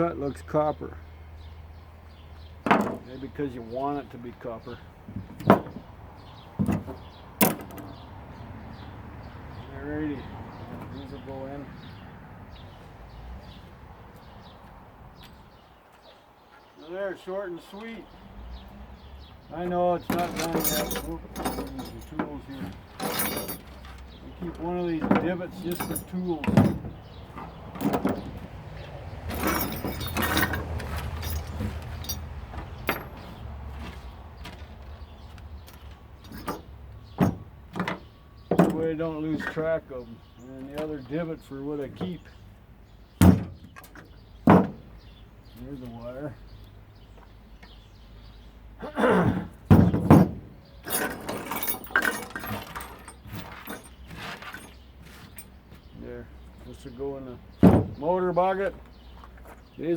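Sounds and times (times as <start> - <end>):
loud knocks: 2.6 - 3.1, 5.1 - 5.9, 24.5 - 28.5, 36.3 - 38.9, 43.2 - 43.8, 44.4 - 44.9, 49.2 - 51.6, 57.6 - 58.1
metal tools clattering: 5.2 - 8.0, 19.6 - 34.7, 35.6 - 39.6, 49.7 - 55.7
metal scrap clanking: 6.6 - 8.0, 20.0 - 33.9, 35.7 - 39.6, 49.3 - 55.5.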